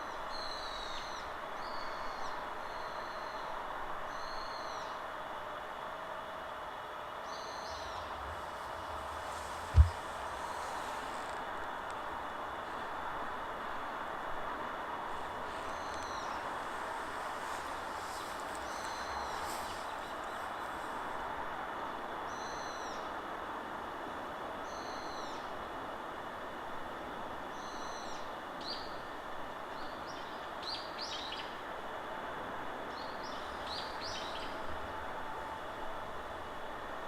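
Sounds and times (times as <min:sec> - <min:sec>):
wind through trees: 0:00.0 - 0:37.0
bird calling: 0:07.3 - 0:11.3.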